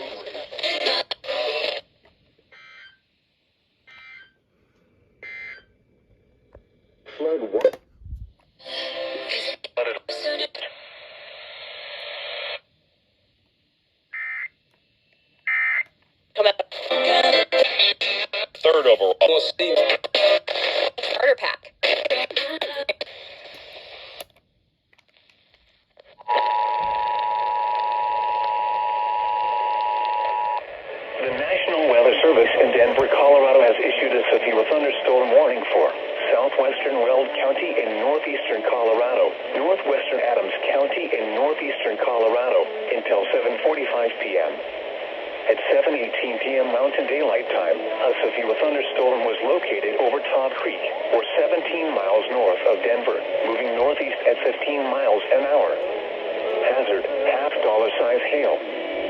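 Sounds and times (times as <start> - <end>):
static-laden radio audio: 0.0 - 1.9, 7.1 - 7.8, 8.6 - 12.7, 16.4 - 24.2, 26.3 - 59.0
steady alarm tone: 3.9 - 4.4, 5.2 - 5.7.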